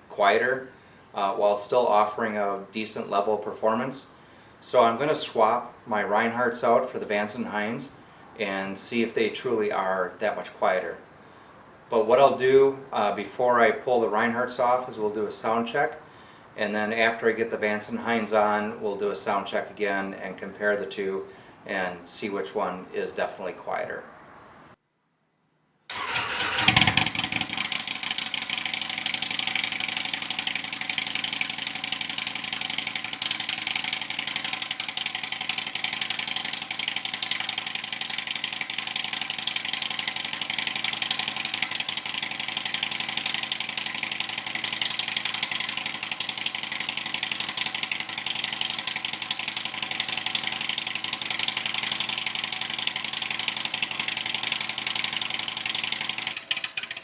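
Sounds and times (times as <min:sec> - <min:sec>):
engine ticking clatter: 0:25.9 - 0:57.0
motorcycle engine idling: 0:25.9 - 0:57.0.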